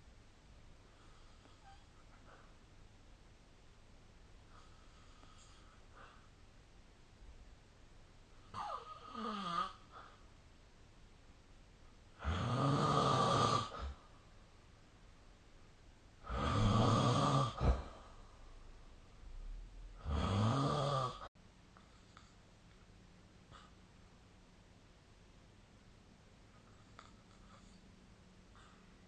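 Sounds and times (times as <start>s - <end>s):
person snoring: 12.2s - 14.0s, 16.2s - 18.2s, 20.0s - 21.3s.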